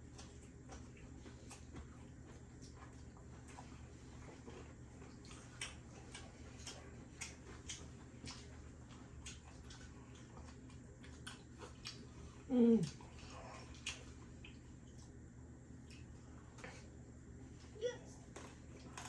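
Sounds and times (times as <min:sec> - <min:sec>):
chewing crispy food: 0:00.0 - 0:19.0
person humming mm: 0:12.5 - 0:13.0.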